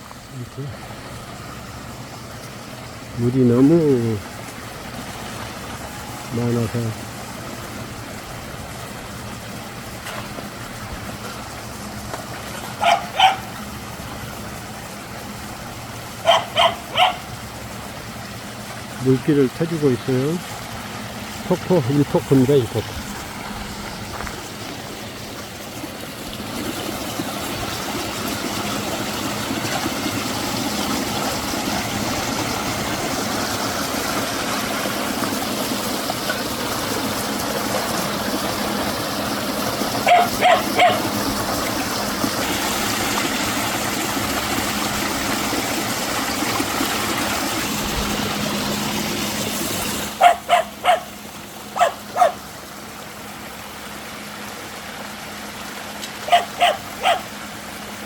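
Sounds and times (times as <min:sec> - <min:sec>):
water pouring down waterfall: 0:00.0 - 0:58.0
dog barking: 0:12.8 - 0:13.5, 0:16.2 - 0:17.3, 0:40.0 - 0:41.1, 0:50.2 - 0:51.1, 0:51.8 - 0:52.4, 0:56.2 - 0:57.3.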